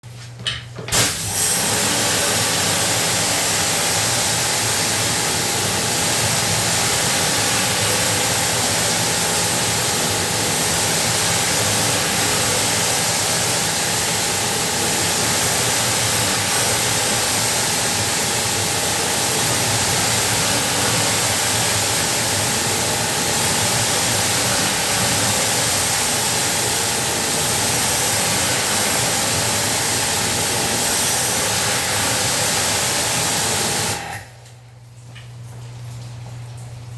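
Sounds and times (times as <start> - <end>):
sprayer motor humming: 0.9 - 34.1
high-pressure water spray: 0.9 - 34.4.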